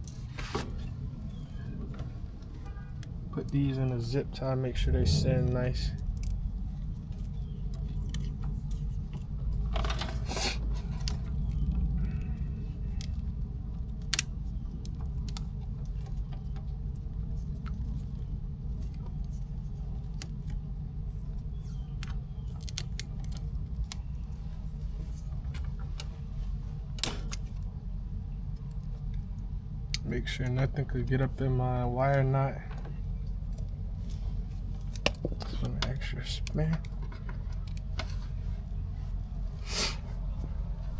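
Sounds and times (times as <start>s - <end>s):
low rumble: 0.0s - 9.7s, 37.4s - 40.9s.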